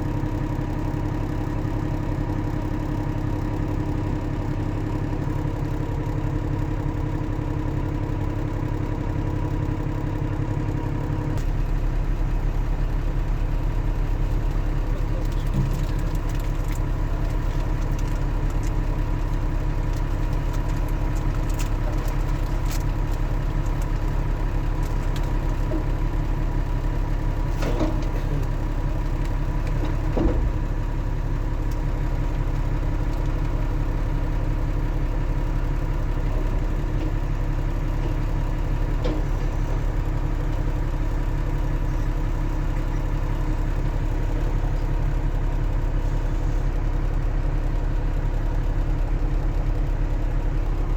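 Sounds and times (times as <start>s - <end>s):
diesel engine running: 0.0s - 50.9s.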